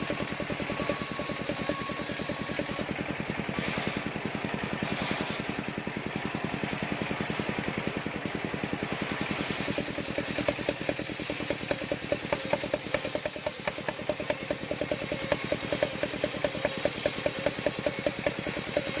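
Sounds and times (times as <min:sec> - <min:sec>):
engine idling: 0:00.0 - 0:19.0
regular clicking rattle: 0:08.6 - 0:19.0.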